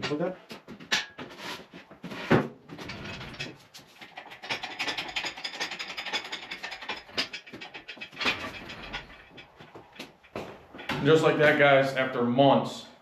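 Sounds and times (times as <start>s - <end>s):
metallic clicking and rattling: 2.8s - 11.0s.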